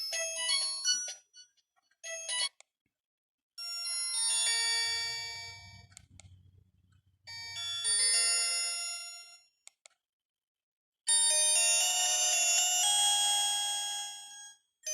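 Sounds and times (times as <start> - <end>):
bell-like phone ringtone: 0.0 - 1.4, 2.0 - 2.6, 3.6 - 5.9, 7.3 - 9.4.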